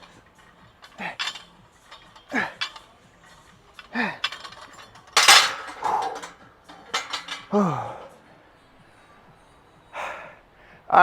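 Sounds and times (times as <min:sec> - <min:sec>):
barbell clanking down: 0:00.0 - 0:08.1
weight plates clinking: 0:00.0 - 0:08.1
man grunting with effort: 0:07.5 - 0:08.1.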